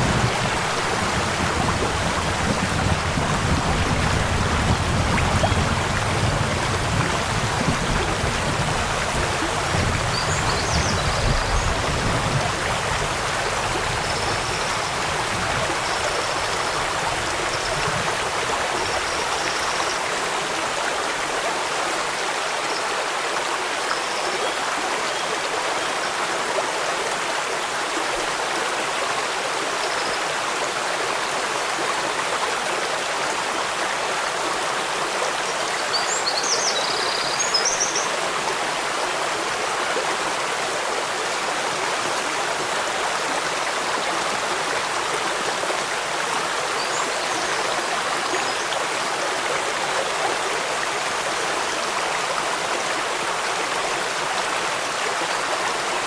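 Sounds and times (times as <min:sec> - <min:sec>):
stream water flowing: 0:00.0 - 0:56.0.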